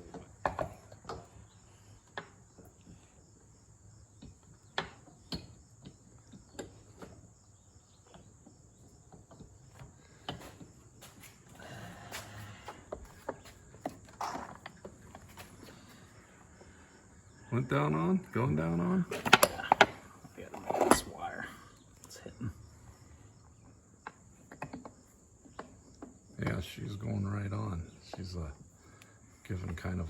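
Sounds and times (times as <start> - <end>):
crickets chirring: 0.0 - 30.0
tools clicking and knocking: 19.1 - 21.0.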